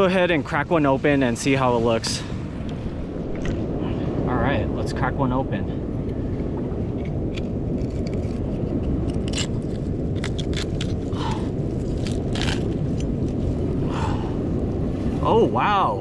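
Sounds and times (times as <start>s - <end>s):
surf: 0.0s - 7.0s, 13.4s - 16.0s
wind: 0.0s - 16.0s
sea urchin shell crunching: 6.0s - 13.8s.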